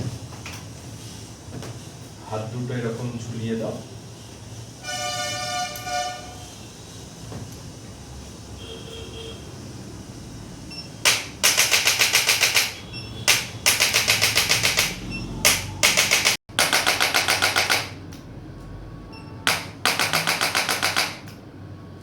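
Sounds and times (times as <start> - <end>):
adjusting instrument clicking rapidly: 11.1 - 18.0, 19.5 - 21.4.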